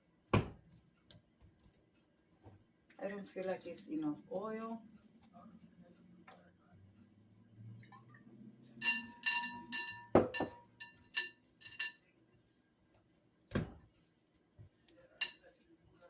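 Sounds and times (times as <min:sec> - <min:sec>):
bowl and utensils clinking: 0:08.8 - 0:12.1, 0:15.0 - 0:15.6.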